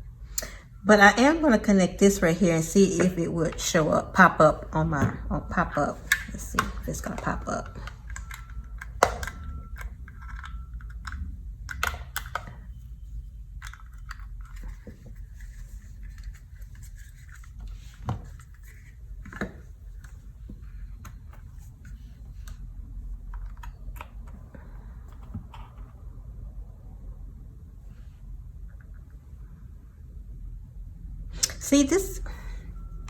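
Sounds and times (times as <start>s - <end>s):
steady low hum: 0.0s - 33.0s
usb connector clicks and rattles: 7.9s - 12.6s.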